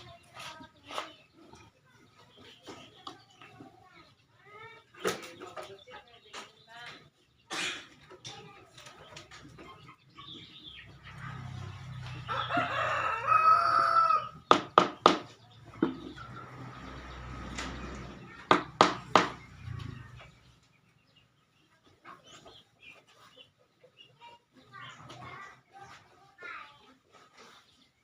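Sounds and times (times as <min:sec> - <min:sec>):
rooster crowing: 0:12.3 - 0:14.4
sharp knocks: 0:14.5 - 0:16.0, 0:18.4 - 0:19.5.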